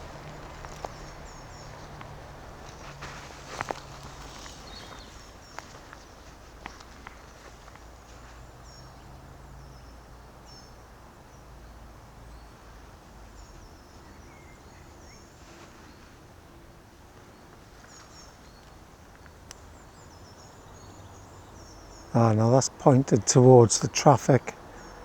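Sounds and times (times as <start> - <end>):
distant road traffic rumble: 0.0 - 25.0
small birds chirping: 0.0 - 25.0.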